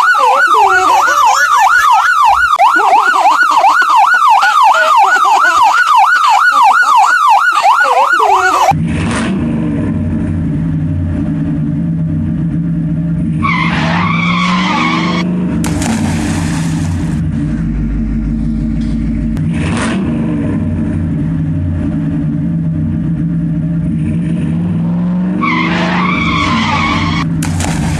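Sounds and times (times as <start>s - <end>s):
emergency siren warbling: 0.0s - 8.8s, 13.4s - 15.3s, 25.4s - 27.3s
vehicle engine running: 8.2s - 13.6s, 15.3s - 25.5s, 26.4s - 27.9s
tyre squeal: 13.4s - 15.3s, 25.4s - 27.3s.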